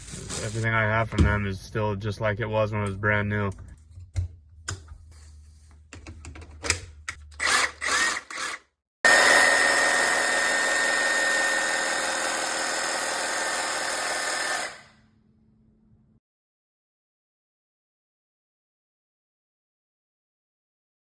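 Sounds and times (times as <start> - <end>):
reciprocating saw whining: 7.4 - 15.0.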